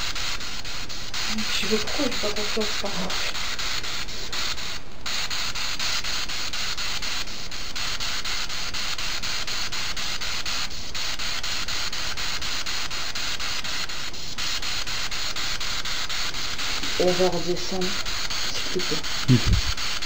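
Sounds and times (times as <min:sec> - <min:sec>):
choppy radio static: 0:01.2 - 0:07.3, 0:12.8 - 0:20.0.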